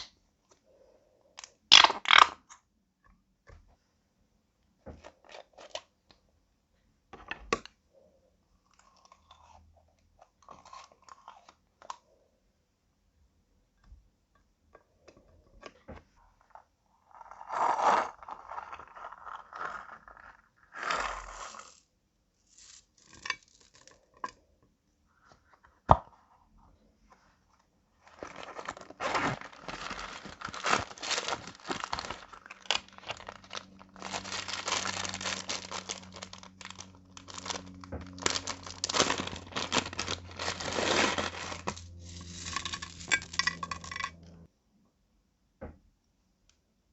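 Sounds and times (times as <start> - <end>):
slime crunching and crackling: 28.1 - 44.0.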